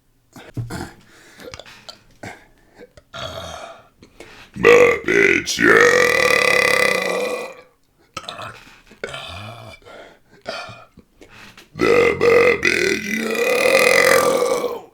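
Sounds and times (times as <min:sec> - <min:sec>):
man burping loudly: 0:04.6 - 0:08.6, 0:11.8 - 0:14.9.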